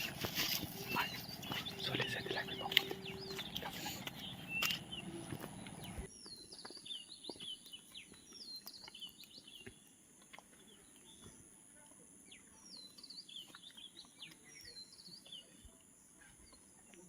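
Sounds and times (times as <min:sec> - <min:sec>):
parrots chirping: 0:00.0 - 0:06.1
high whistled calls: 0:00.0 - 0:06.5.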